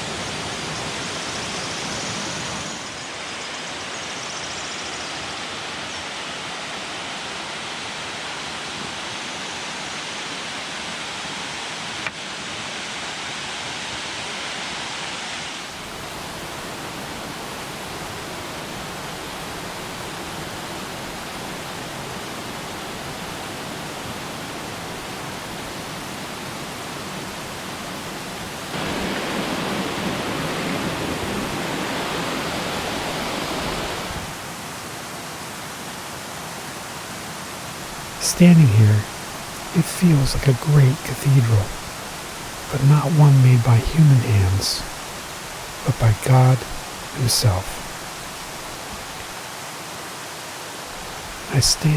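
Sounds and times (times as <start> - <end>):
waterfall rushing: 11.8 - 51.9.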